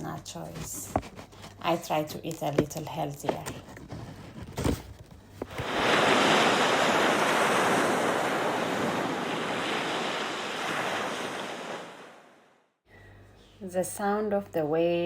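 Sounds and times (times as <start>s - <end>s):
waves washing onto beach: 5.5s - 12.3s.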